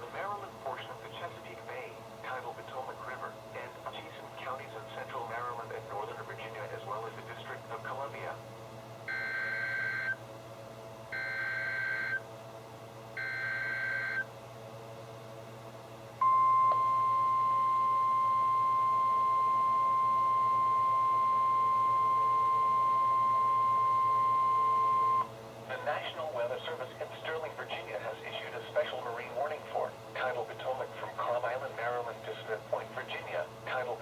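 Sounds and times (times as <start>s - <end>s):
steady warning alarm tone: 9.1s - 10.2s, 11.1s - 12.2s, 13.2s - 14.3s, 16.2s - 25.3s.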